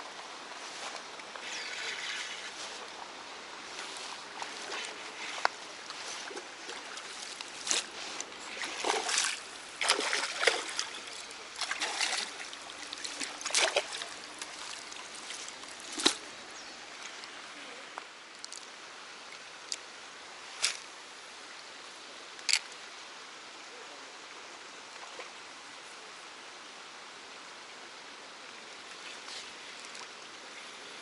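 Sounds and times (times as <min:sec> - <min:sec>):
water splashing: 0:03.7 - 0:16.4.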